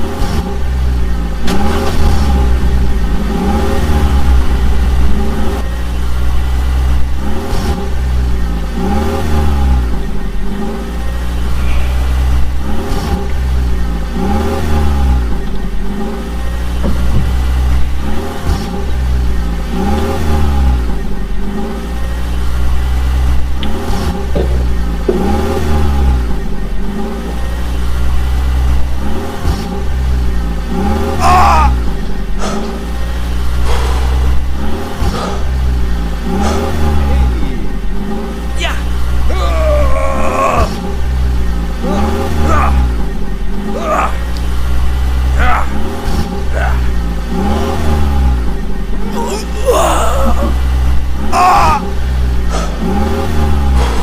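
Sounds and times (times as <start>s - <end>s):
steady low hum: 0.0s - 8.8s
vehicle engine revving: 0.0s - 54.0s.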